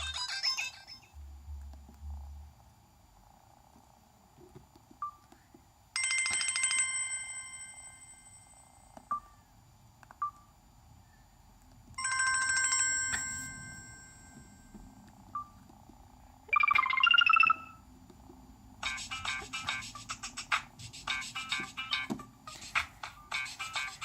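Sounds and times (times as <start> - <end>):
bell-like phone ringtone: 6.0 - 8.8, 12.0 - 14.8, 16.5 - 17.8.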